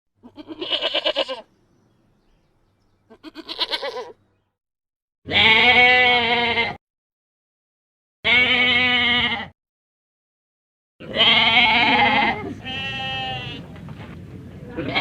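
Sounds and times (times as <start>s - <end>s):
goat bleating: 0.2s - 1.5s, 3.1s - 4.2s, 5.3s - 6.8s, 8.3s - 9.6s, 11.0s - 13.7s, 14.8s - 15.0s.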